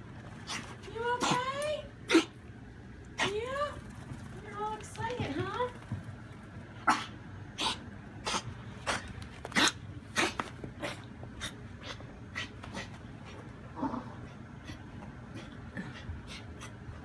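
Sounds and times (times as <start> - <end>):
dog coughing: 2.1 - 2.4, 6.8 - 11.1, 15.4 - 16.4.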